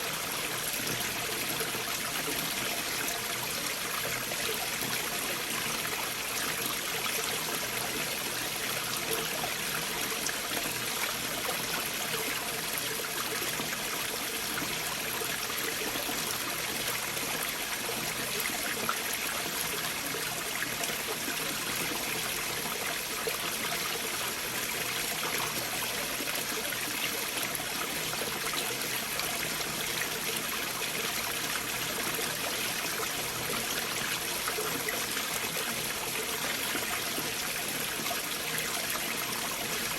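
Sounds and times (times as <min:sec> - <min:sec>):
stream water flowing over boulders: 0:00.0 - 0:39.9.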